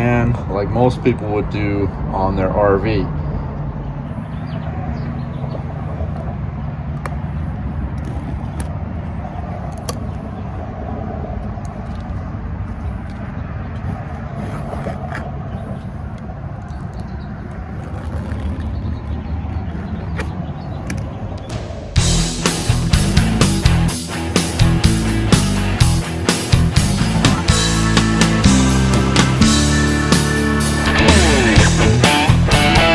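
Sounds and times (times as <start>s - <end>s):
low engine rumble: 0.0s - 32.9s.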